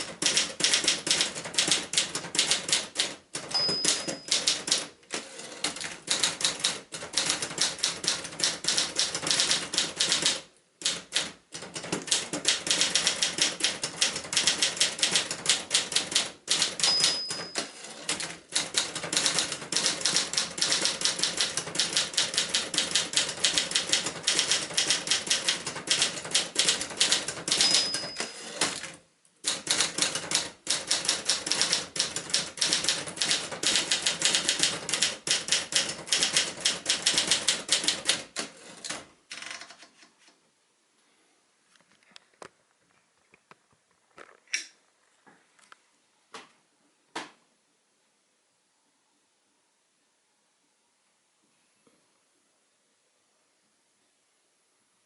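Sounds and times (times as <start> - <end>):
typewriter key strikes: 0.0 - 4.9, 5.7 - 38.3
typewriter margin bell ping: 3.4 - 4.8, 16.6 - 18.2, 27.0 - 28.7.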